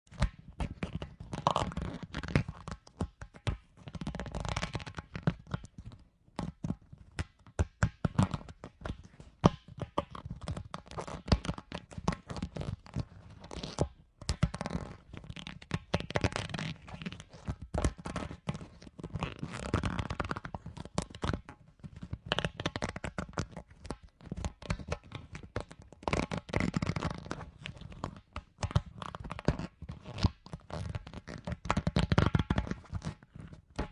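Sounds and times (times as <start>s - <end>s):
rubber ball being rubbed: 8.0s - 33.9s.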